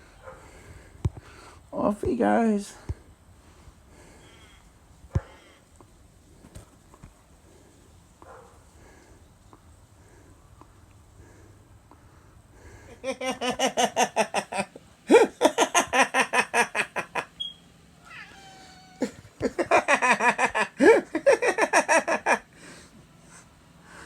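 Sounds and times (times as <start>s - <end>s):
cat crying: 18.0s - 19.3s.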